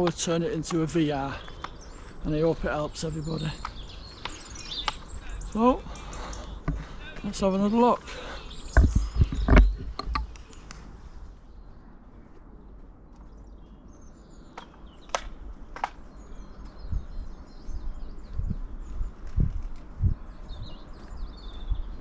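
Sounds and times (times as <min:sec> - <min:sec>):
small birds chirping: 0:00.0 - 0:22.0
sharp clicks: 0:03.6 - 0:05.1, 0:14.6 - 0:16.0
low thumps: 0:08.7 - 0:10.4.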